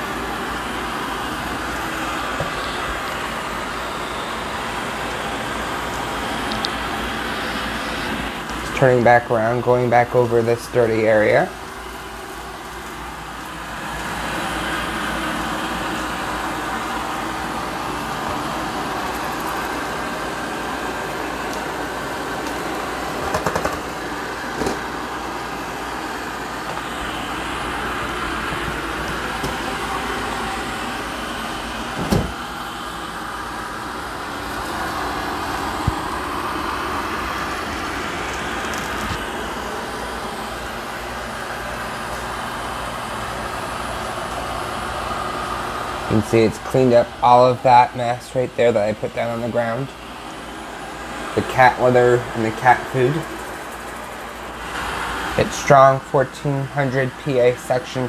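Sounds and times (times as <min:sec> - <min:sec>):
robot vacuum whirring: 0:00.0 - 0:08.8, 0:11.5 - 0:46.2.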